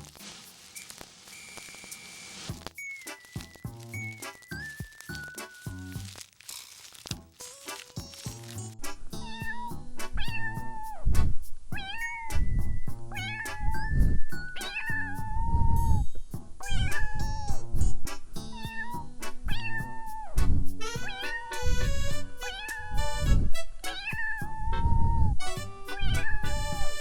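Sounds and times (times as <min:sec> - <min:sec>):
background music with steady beat: 0:25.4 - 0:27.0.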